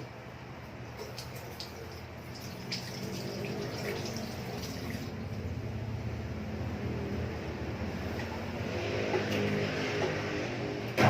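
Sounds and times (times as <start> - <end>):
water drips and splashes: 0.9 - 5.5, 8.0 - 9.7
tap water running into sink: 1.0 - 5.2.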